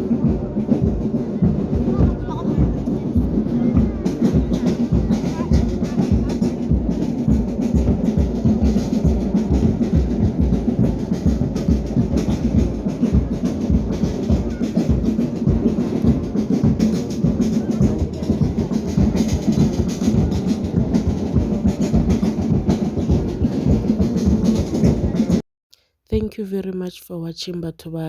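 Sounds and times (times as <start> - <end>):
music with heavy drum beat: 0.0 - 25.4.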